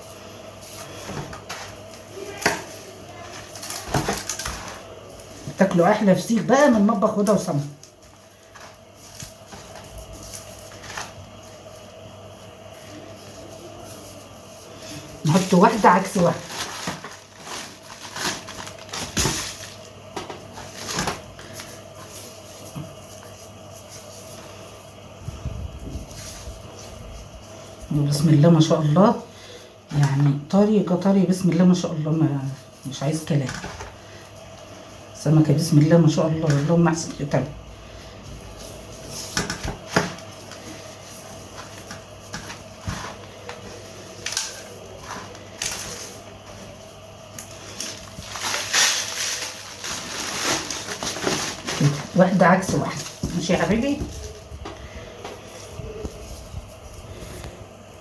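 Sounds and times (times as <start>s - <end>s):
faint steady hum: 0.0s - 58.0s
gritty salt rustling: 37.8s - 57.8s.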